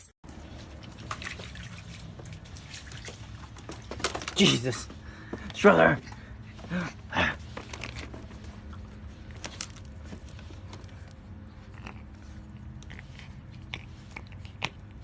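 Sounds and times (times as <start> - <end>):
low steady hum: 0.3 - 15.0
crunchy chewing: 7.4 - 15.0.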